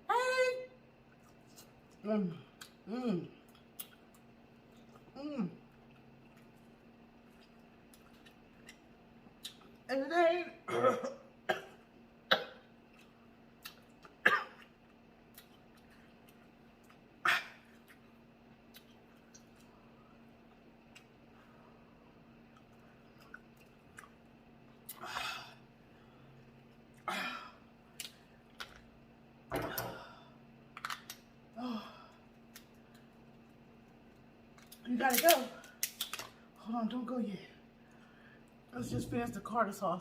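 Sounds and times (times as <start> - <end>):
person coughing: 10.7 - 12.6, 14.2 - 14.6
crab shells crackling: 34.5 - 36.4.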